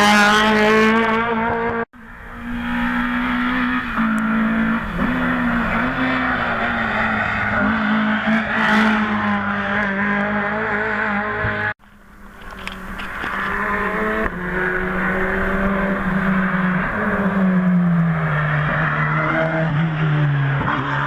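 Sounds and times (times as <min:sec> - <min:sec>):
race car engine at high revs: 0:00.0 - 0:11.8, 0:12.4 - 0:21.0.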